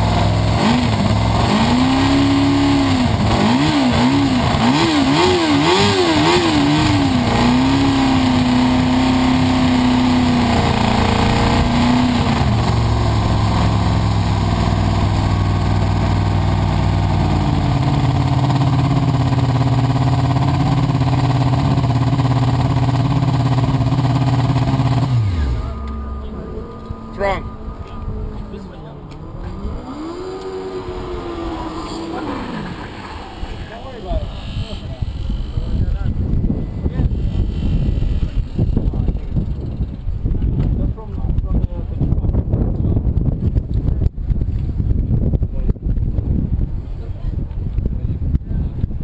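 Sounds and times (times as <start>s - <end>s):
race car engine revving: 0.0s - 36.4s.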